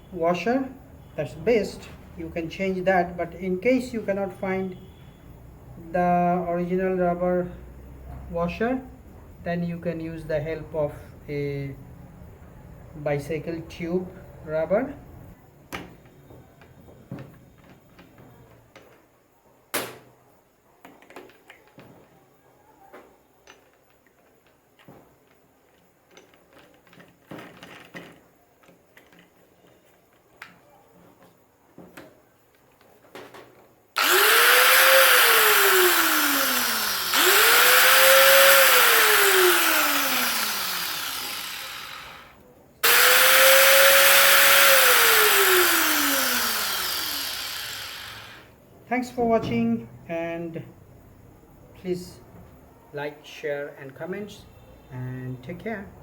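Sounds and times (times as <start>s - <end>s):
faint clicks and handling knocks: 15.7s - 19.2s, 20.8s - 22.2s, 22.9s - 33.8s
angle grinder spinning with whine: 34.0s - 48.5s.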